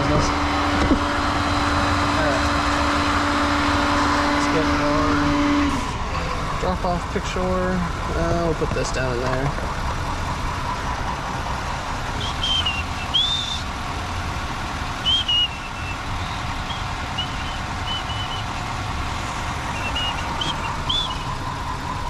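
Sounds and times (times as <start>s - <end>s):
truck engine idling: 0.0s - 22.0s.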